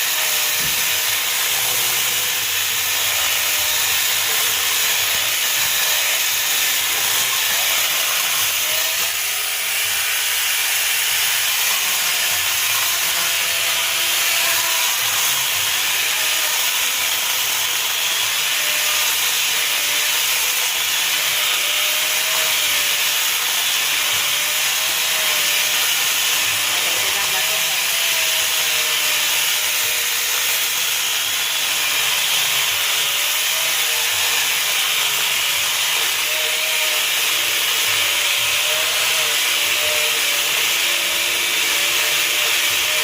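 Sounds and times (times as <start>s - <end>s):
electric chainsaw cutting wood: 0.0s - 43.0s.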